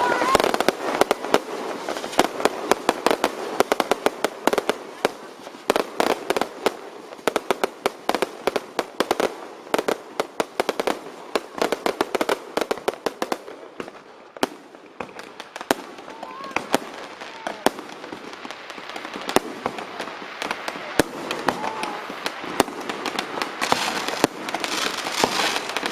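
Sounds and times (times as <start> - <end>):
firecrackers cracking: 0.0 - 25.9.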